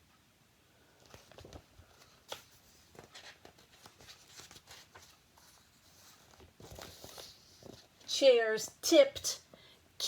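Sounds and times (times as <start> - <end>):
paper pages rustling: 0.9 - 8.1.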